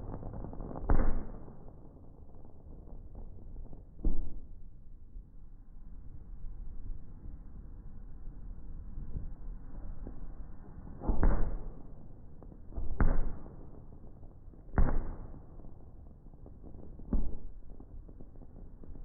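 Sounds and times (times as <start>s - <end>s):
fireworks booming: 14.8s - 19.0s.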